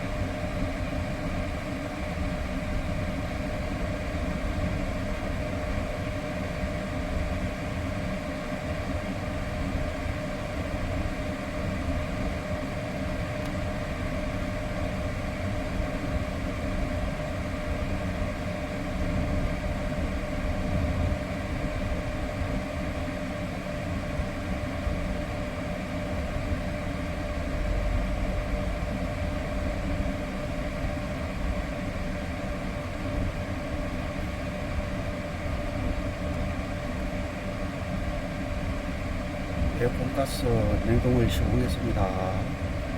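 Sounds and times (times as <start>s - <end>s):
constant whine: 26.2s - 42.9s.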